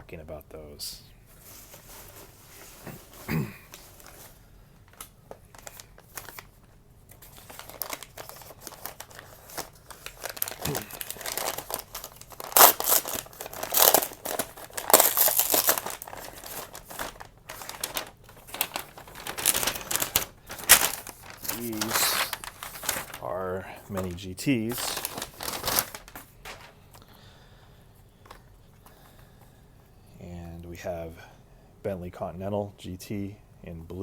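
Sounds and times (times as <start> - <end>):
packing material crinkling: 1.4 - 27.1.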